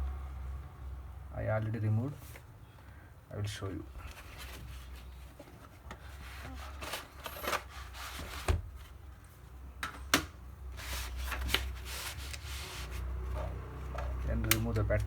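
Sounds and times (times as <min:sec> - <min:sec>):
laptop being handled: 0:04.0 - 0:09.0, 0:09.9 - 0:15.0.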